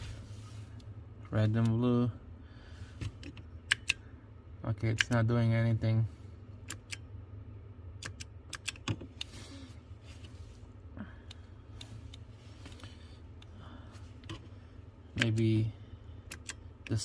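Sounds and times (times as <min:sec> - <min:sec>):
low steady hum: 0:00.0 - 0:17.0
switch clicks: 0:03.2 - 0:04.0, 0:04.8 - 0:05.2, 0:06.6 - 0:07.1, 0:08.0 - 0:09.3, 0:15.2 - 0:15.5, 0:16.3 - 0:17.0.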